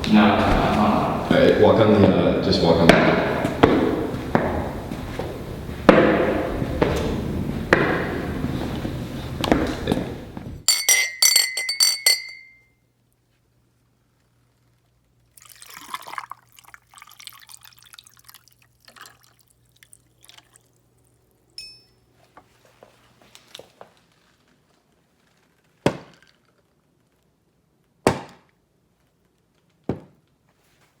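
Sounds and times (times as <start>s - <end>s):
liquid splashing and pouring: 15.4s - 21.2s.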